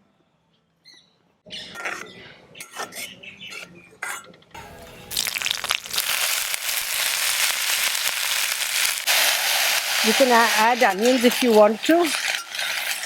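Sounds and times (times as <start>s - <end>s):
vegetables sizzling in hot oil: 4.6s - 13.0s.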